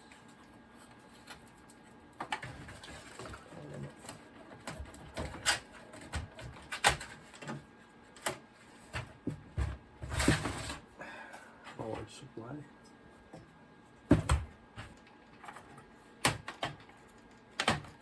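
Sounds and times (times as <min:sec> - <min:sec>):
computer parts clicking and knocking: 0:02.2 - 0:07.6, 0:14.1 - 0:18.0.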